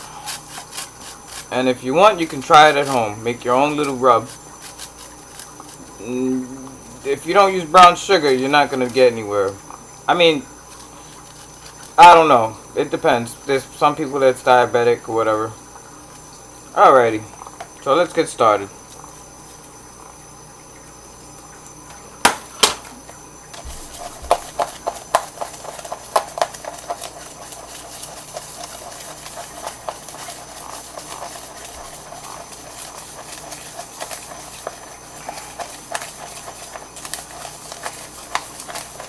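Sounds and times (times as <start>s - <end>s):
utensils tapping and scraping: 0.0s - 6.0s, 22.6s - 39.0s.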